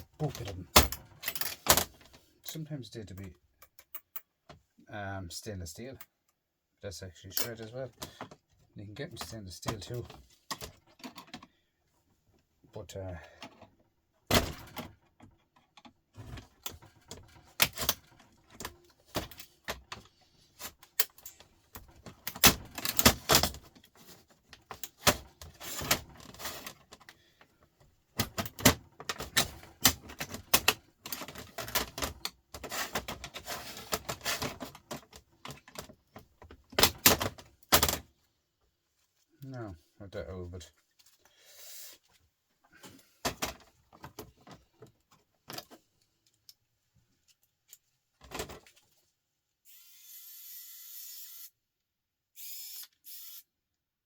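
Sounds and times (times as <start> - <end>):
small parts clicking and clattering: 28.2 - 38.0.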